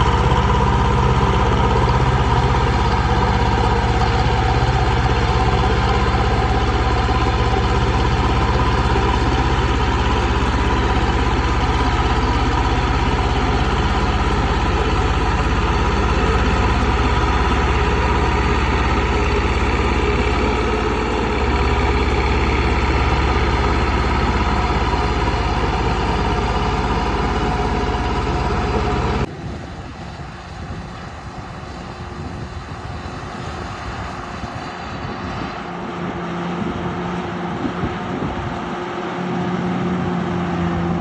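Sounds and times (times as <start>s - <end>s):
distant machine running: 0.0s - 29.3s
bulldozer diesel engine humming: 0.0s - 41.0s.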